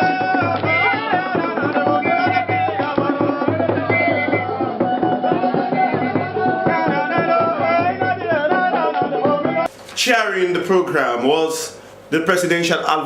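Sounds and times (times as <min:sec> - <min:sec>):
music with drums and percussion: 0:00.0 - 0:09.7.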